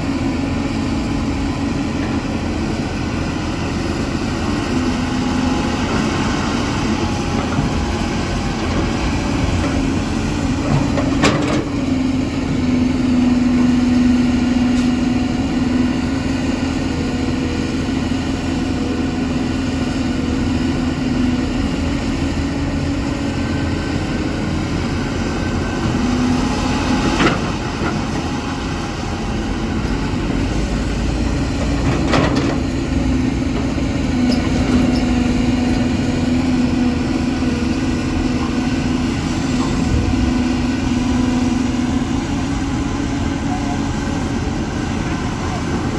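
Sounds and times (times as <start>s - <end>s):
excavator diesel engine: 0.0s - 45.9s.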